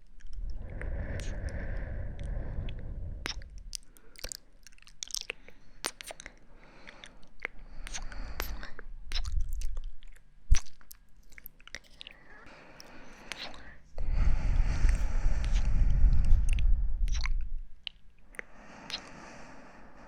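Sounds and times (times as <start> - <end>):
crackles and clicks at microphone: 0.0 - 6.4, 7.8 - 12.2, 14.8 - 19.1.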